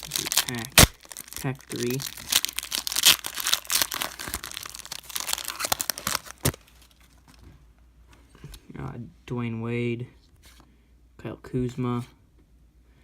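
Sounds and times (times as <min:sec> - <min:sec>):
wrapper tearing and crinkling: 0:00.0 - 0:07.1.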